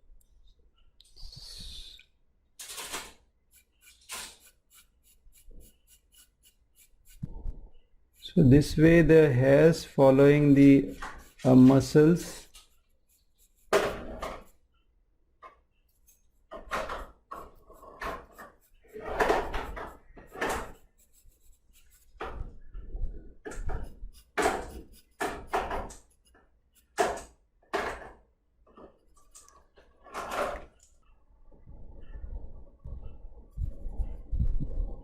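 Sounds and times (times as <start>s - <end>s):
drawing tool scratching on paper: 2.7s - 14.7s, 15.8s - 22.8s, 23.4s - 27.4s.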